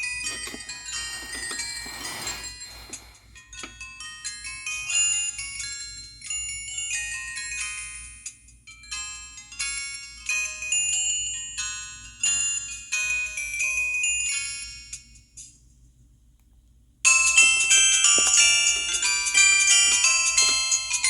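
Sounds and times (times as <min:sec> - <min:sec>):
rustle of noise: 0:00.3 - 0:03.3
phone ringtone melody: 0:17.1 - 0:21.0.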